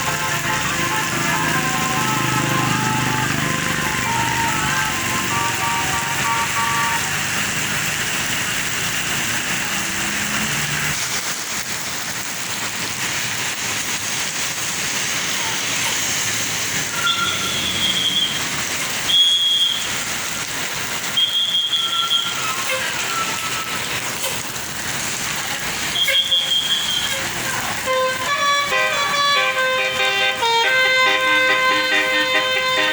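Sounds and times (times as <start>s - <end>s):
melodic bus horn tune: 0.0s - 7.2s, 27.8s - 32.9s
passing traffic: 0.0s - 32.9s.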